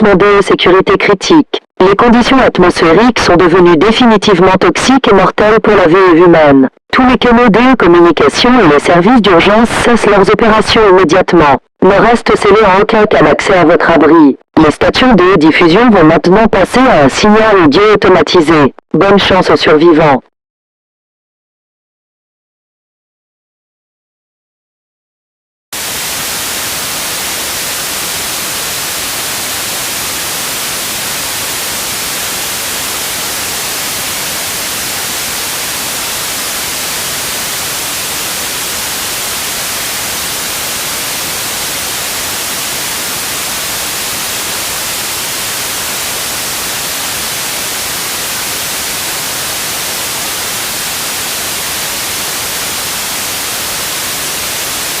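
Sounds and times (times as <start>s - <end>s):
loud broadcast static hiss: 25.8s - 55.0s.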